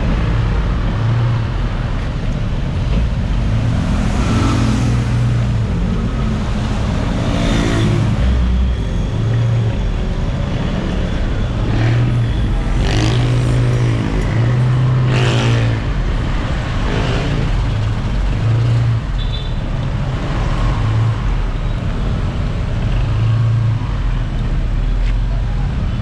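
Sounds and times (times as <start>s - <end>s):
motor engine rumbling: 0.0s - 14.9s.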